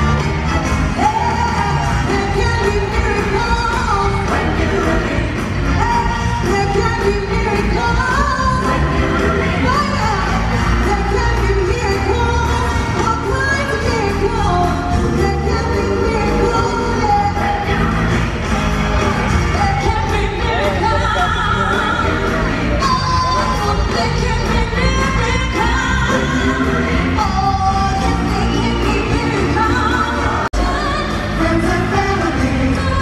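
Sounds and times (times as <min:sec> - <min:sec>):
music with steady bass: 0:00.0 - 0:33.0
person singing: 0:01.0 - 0:33.0.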